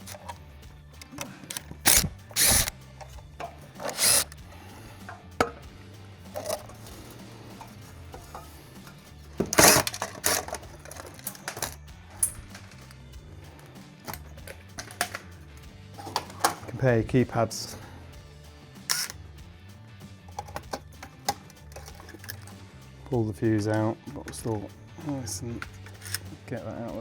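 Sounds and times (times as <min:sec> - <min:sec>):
quiet background music: 0:00.0 - 0:27.0
alarm hardware knocking and scraping: 0:03.4 - 0:04.4, 0:18.9 - 0:19.1.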